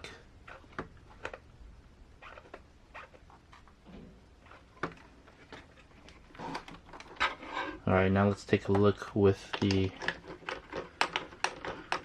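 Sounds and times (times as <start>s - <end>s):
hands handling plastic wheels: 2.2s - 12.0s.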